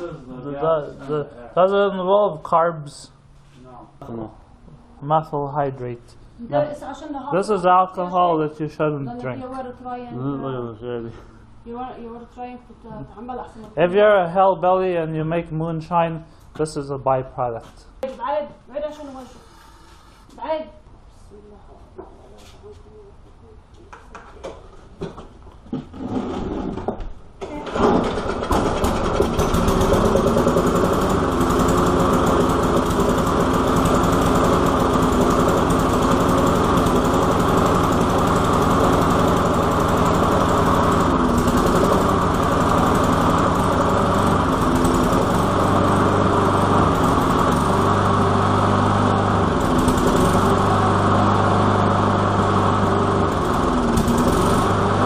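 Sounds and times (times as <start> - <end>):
lawn mower engine starting: 25.8 - 55.0.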